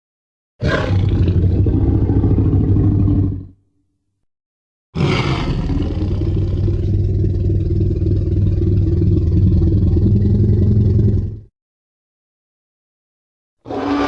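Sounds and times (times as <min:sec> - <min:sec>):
deep monster roar: 0:00.6 - 0:03.6, 0:05.0 - 0:11.5, 0:13.6 - 0:14.0.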